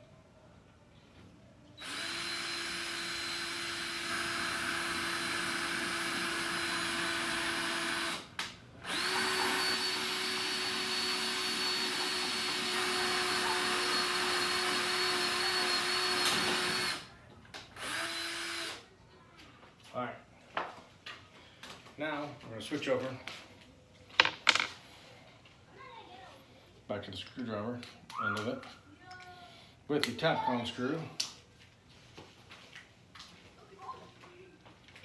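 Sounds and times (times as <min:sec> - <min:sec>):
power drill whining: 0:01.8 - 0:17.1, 0:17.8 - 0:18.8.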